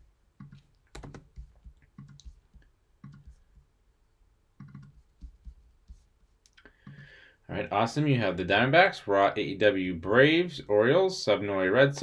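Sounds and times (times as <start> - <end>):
computer mouse and keyboard clicks: 0.4 - 2.4, 3.0 - 3.4, 4.6 - 5.6.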